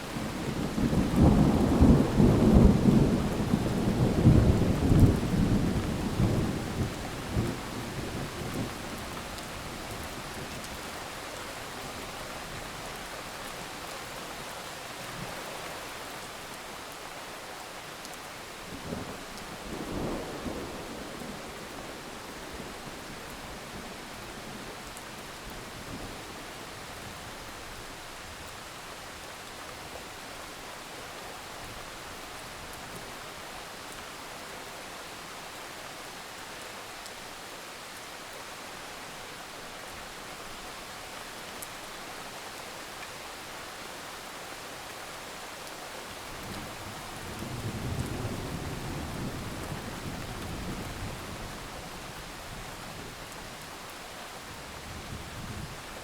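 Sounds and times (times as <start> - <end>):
heavy rain hissing: 19.6 - 24.8.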